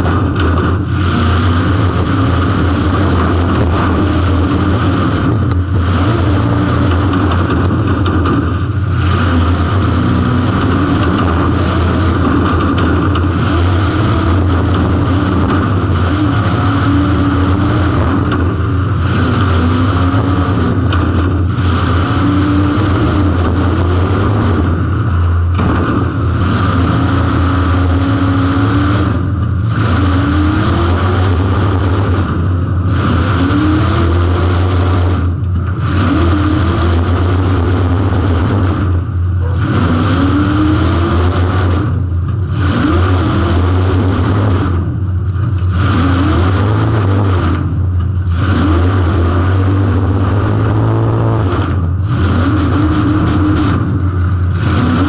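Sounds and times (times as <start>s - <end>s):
car engine revving: 0.0s - 55.0s
low hum: 0.0s - 55.0s.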